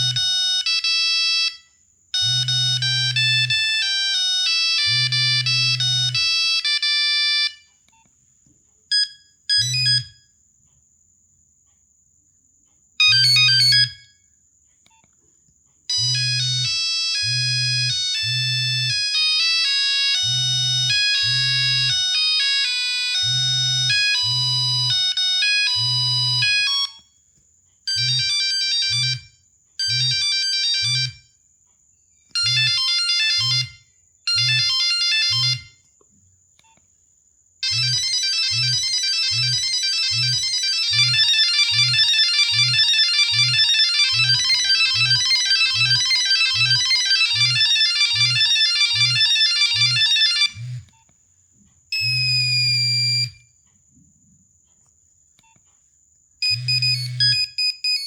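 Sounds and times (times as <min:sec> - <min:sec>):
monophonic ringtone beeping melody: 0:02.2 - 0:07.6, 0:13.0 - 0:14.0, 0:15.9 - 0:26.9, 0:32.4 - 0:35.7, 0:37.6 - 0:50.7, 0:56.4 - 0:58.0.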